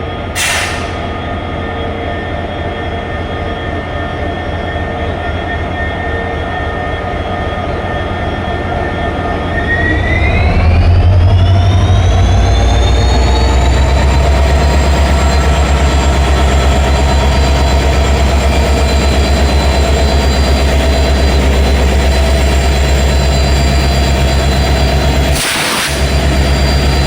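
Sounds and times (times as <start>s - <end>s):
diesel locomotive engine throbbing: 0.0s - 27.0s
high turbo whine: 6.4s - 27.0s.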